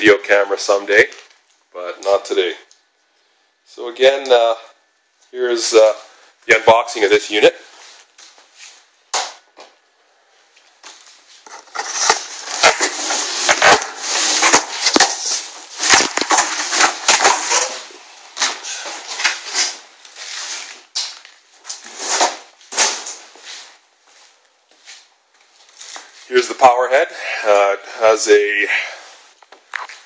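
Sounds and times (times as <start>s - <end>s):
packaging tearing and rustling: 11.4s - 23.2s.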